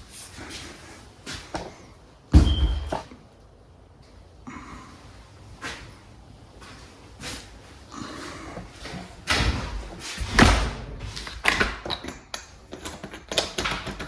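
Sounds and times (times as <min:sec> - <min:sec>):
door thudding and knocking: 0:02.3 - 0:03.0.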